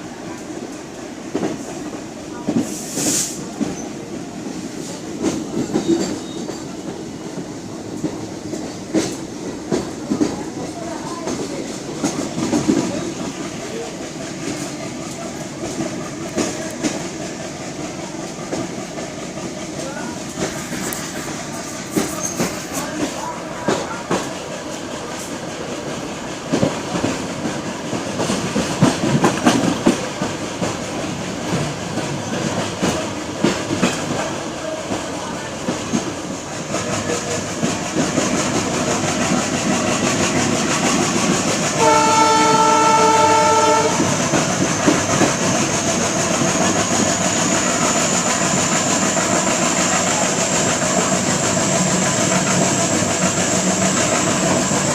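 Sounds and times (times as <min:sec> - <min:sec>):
train running rumble: 0:00.0 - 0:54.9
train wheels clattering on rails: 0:00.0 - 0:54.9
train horn: 0:41.8 - 0:44.2.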